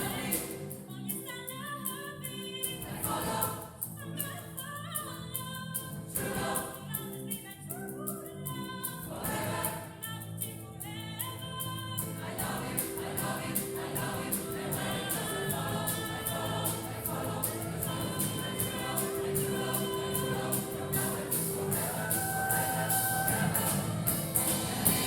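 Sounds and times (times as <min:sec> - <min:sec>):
steady rhythmic beat: 0:00.0 - 0:00.9, 0:12.0 - 0:25.0
choir singing gospel: 0:00.0 - 0:01.1, 0:02.7 - 0:03.9, 0:05.9 - 0:07.2, 0:08.9 - 0:10.0, 0:11.8 - 0:25.0.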